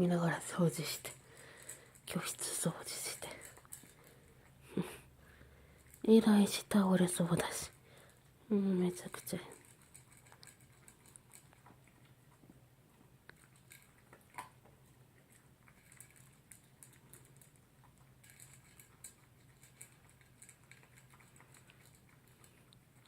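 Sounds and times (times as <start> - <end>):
dog eating from a bowl: 0.0 - 23.0
low room hum: 0.0 - 23.0.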